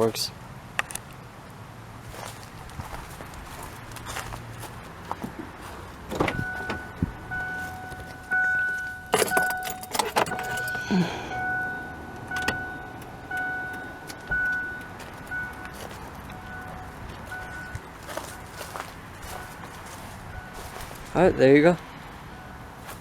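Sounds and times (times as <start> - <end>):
car warning chime beeping: 5.8 - 23.0.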